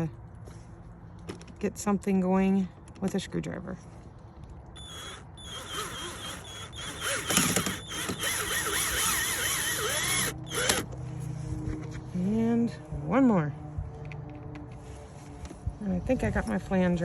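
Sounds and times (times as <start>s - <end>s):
screwdriver driving screw into plastic: 4.8s - 10.9s.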